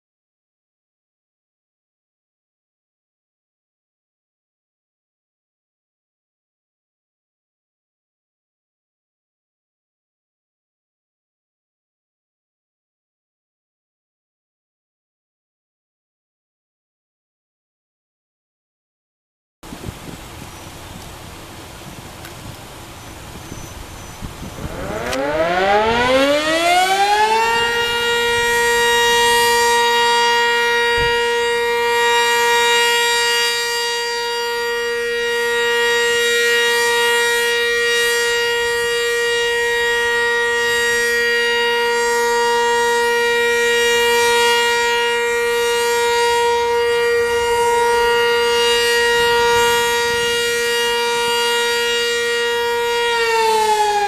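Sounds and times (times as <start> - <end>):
warning siren winding up: 23.9 - 54.0.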